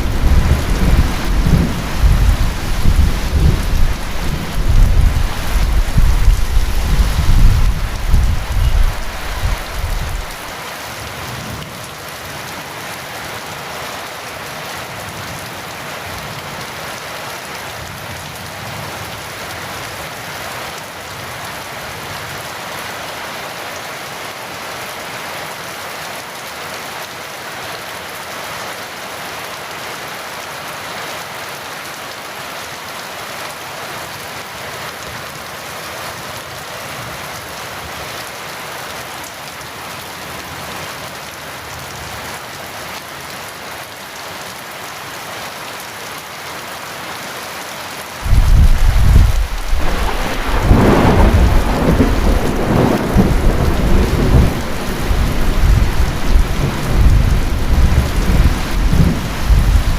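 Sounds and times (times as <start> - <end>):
thunder rumbling: 0.0 - 10.4, 48.2 - 59.9
heavy rain falling: 0.0 - 59.9.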